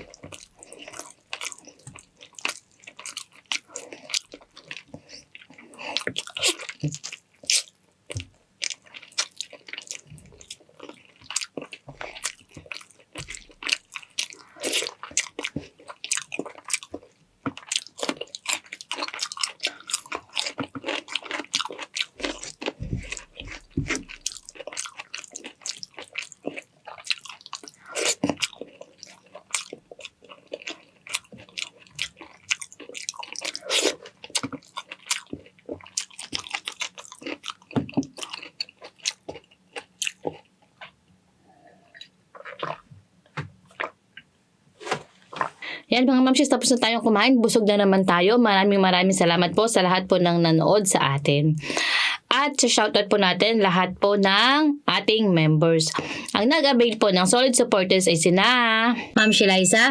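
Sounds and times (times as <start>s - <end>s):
wet chewing and crunching: 0.0s - 41.0s, 41.9s - 43.0s, 43.6s - 44.3s.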